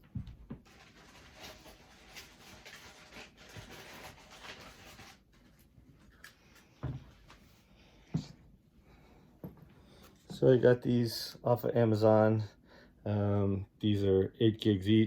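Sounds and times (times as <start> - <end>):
faint rustling and handling: 0.0 - 10.8.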